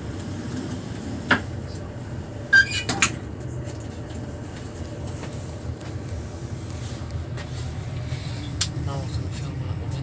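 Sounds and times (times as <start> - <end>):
train interior hum: 0.0 - 10.0.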